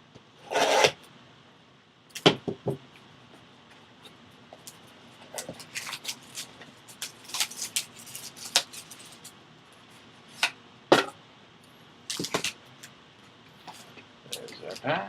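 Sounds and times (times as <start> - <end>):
cardboard and wrapping scrapes: 0.5 - 0.9.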